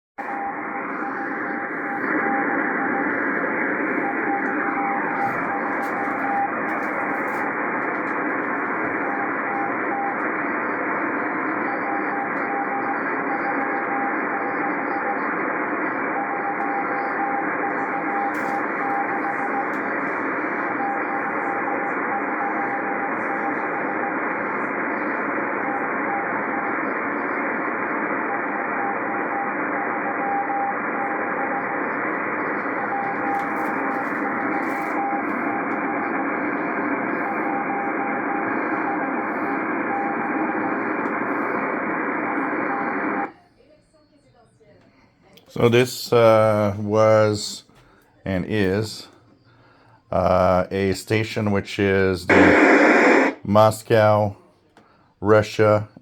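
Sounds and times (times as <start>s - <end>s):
morse code tone: 0.2s - 24.2s, 25.5s - 43.3s, 52.3s - 54.2s
shortwave static hiss: 52.3s - 53.5s.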